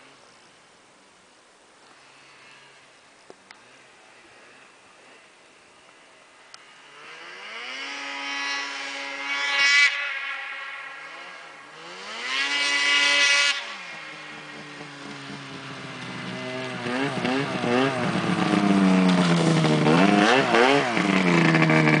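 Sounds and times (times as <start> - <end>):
snowmobile engine revving: 6.5 - 22.0.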